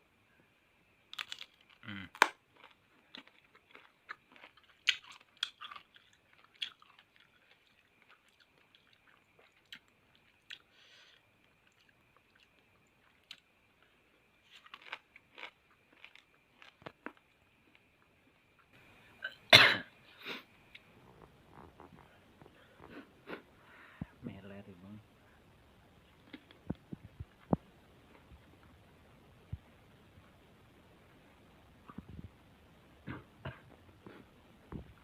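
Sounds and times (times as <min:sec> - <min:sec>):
chewing crisp fruit: 0:01.1 - 0:18.8.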